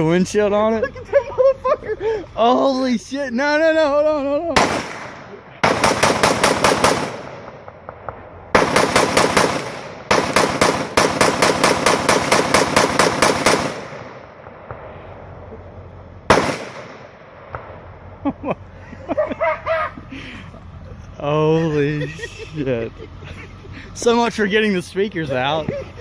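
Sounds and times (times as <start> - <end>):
rapid gunfire: 4.6 - 15.0, 16.3 - 17.8
single gunshot: 4.6 - 15.1, 16.3 - 17.8.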